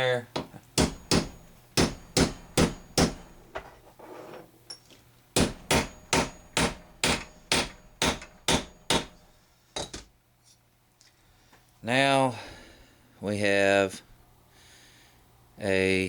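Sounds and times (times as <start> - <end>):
hammer blows on metal: 0.8 - 3.5, 5.4 - 9.9.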